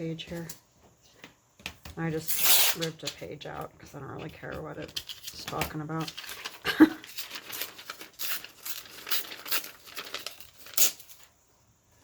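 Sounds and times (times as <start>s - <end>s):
paper ripping and rustling: 2.3s - 2.9s, 5.0s - 11.3s.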